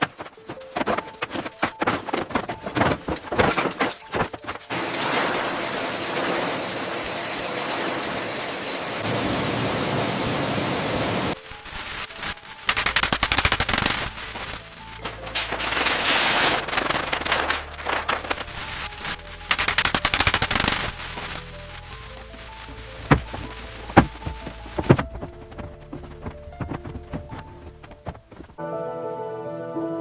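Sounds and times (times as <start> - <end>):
steady hiss: 9.0 - 16.7, 18.2 - 25.0
rapid knocks and taps: 22.7 - 28.6.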